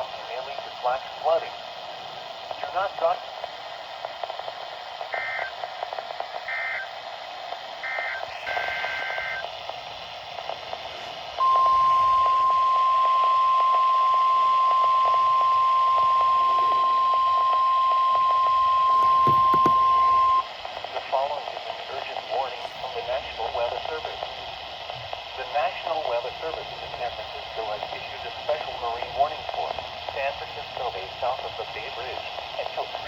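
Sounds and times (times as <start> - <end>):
radio hiss: 0.0 - 33.0
steady warning alarm tone: 11.4 - 20.5.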